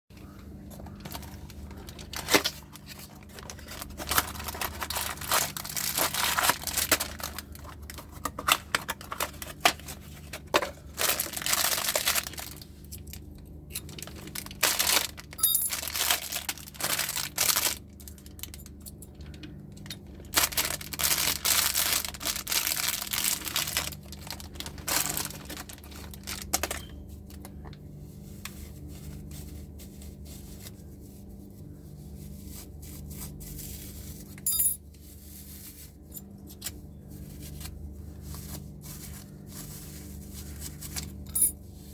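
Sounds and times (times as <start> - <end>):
plastic crackling and tearing: 0.8 - 27.9.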